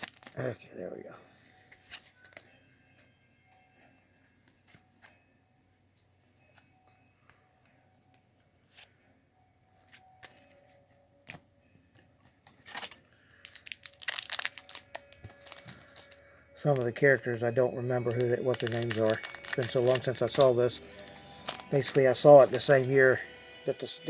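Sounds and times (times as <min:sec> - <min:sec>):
card pack wrapper clicks: 0:00.0 - 0:00.4, 0:12.6 - 0:17.0, 0:18.0 - 0:23.2
wrapper crinkling and tearing: 0:00.0 - 0:00.5, 0:12.6 - 0:23.2.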